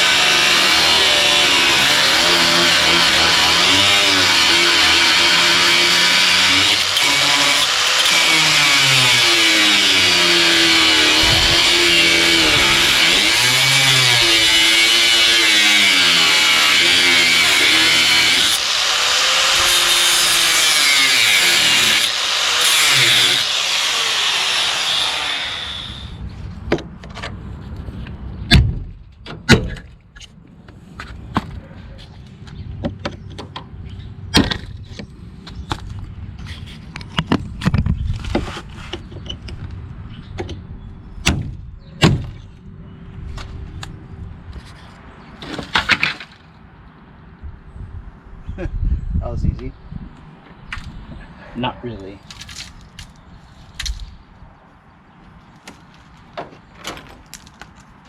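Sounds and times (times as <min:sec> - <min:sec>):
power tool running: 0:00.0 - 0:26.2.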